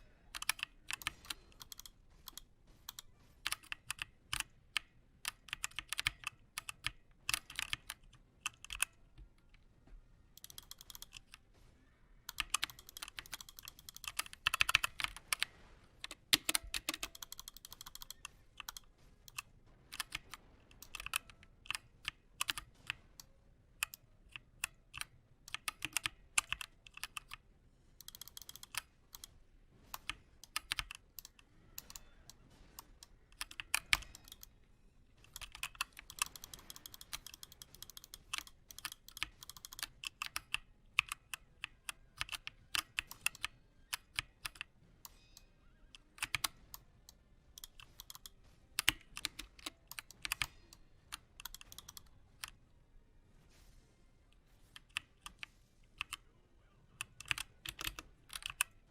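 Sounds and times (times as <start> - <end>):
mechanical keyboard typing: 0.3 - 9.5, 10.4 - 11.5, 12.3 - 27.4, 28.0 - 34.5, 35.2 - 52.6, 54.5 - 56.3, 57.0 - 58.9.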